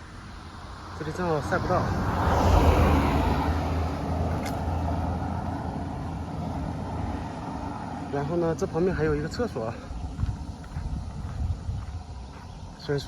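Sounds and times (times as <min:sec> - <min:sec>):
vehicle driving past: 0:00.8 - 0:09.2.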